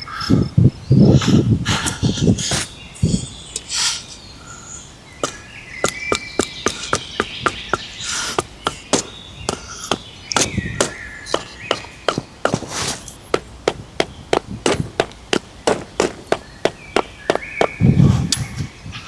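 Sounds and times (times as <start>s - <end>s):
hand tool striking blows: 5.2s - 18.2s.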